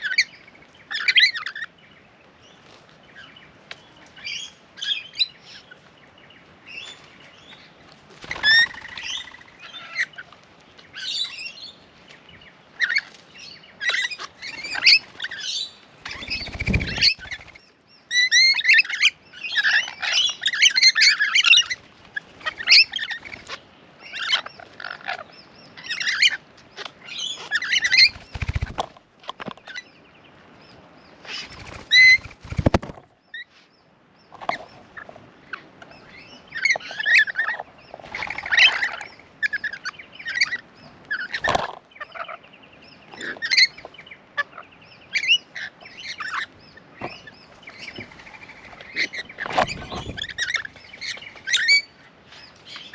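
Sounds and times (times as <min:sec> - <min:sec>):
parrots chattering and screeching: 0:08.2 - 0:10.3, 0:13.8 - 0:21.8, 0:22.4 - 0:28.8, 0:36.6 - 0:42.4, 0:47.2 - 0:51.9.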